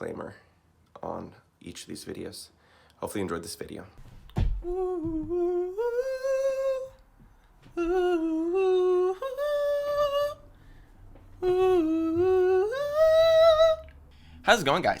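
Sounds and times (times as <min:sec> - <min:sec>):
person humming a slow melody: 0:04.6 - 0:07.0, 0:07.8 - 0:10.5, 0:11.4 - 0:13.9.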